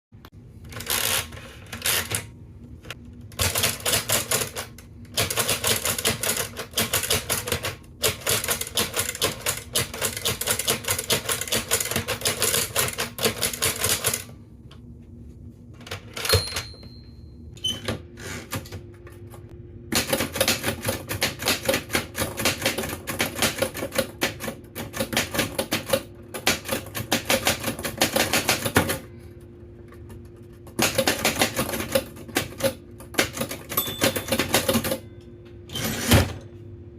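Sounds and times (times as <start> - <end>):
typewriter keys clacking: 3.4 - 14.2, 30.0 - 35.0
typewriter bell ringing: 16.2 - 17.5, 33.7 - 35.2.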